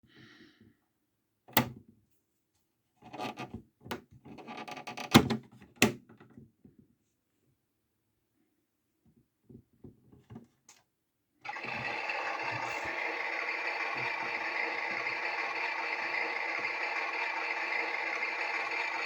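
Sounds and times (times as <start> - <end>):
toy rubbing and rattling: 11.5 - 19.0.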